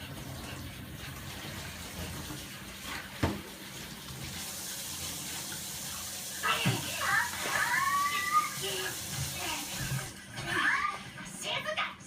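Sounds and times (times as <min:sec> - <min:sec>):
tap running into sink: 0:01.4 - 0:07.5.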